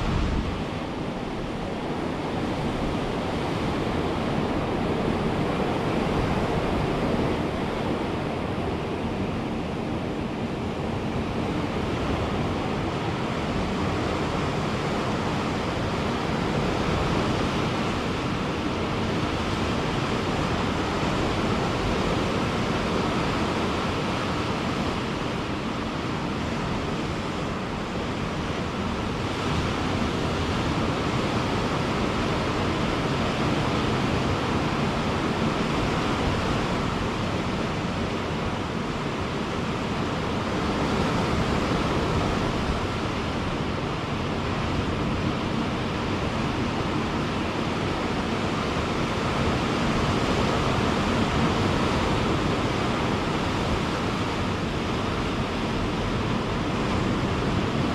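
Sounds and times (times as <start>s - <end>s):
ocean waves breaking on beach: 0.0s - 57.9s.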